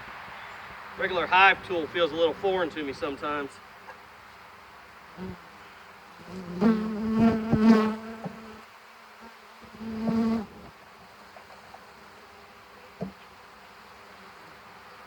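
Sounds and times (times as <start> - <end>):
faint hum of bees: 0.4 - 15.0
bees buzzing close by: 5.1 - 15.0.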